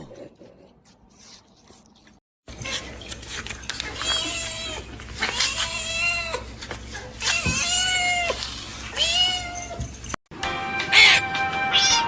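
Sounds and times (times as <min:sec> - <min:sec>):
background music: 0:10.3 - 0:12.0
cat meowing: 0:10.9 - 0:12.0.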